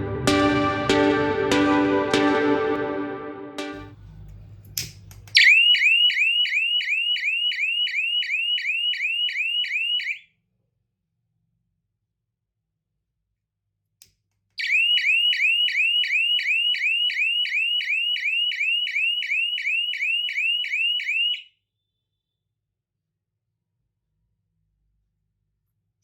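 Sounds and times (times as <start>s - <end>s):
click: 4.3s - 5.5s, 14.0s - 14.7s
alarm rising chirps: 5.4s - 10.2s, 14.6s - 21.4s.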